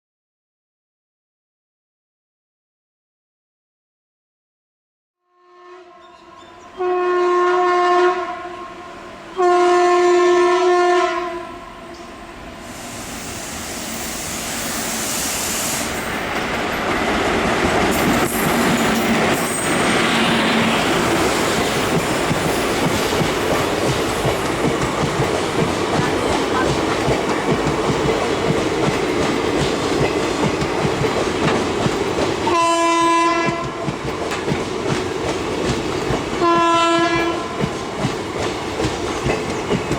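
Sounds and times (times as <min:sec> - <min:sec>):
train horn blasts: 0:05.2 - 0:12.1, 0:32.4 - 0:33.8, 0:36.4 - 0:37.6
train rumbling past: 0:05.9 - 0:39.9.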